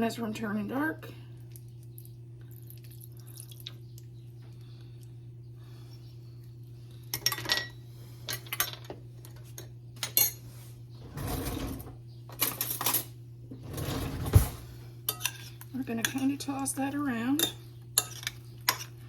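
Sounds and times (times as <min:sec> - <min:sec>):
dishes and utensils clattering: 0:07.2 - 0:09.0, 0:09.6 - 0:10.4, 0:11.0 - 0:16.4, 0:17.4 - 0:19.0.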